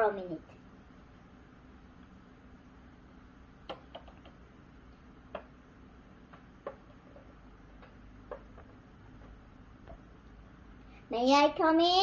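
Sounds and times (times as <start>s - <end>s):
faint clicks and taps: 3.6s - 4.4s, 5.3s - 5.6s, 6.2s - 10.4s.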